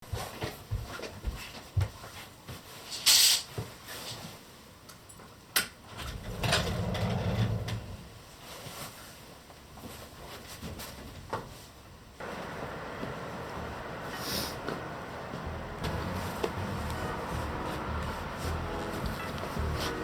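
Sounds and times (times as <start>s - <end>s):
loud rustle: 12.2s - 20.0s
low rumble: 12.2s - 20.0s.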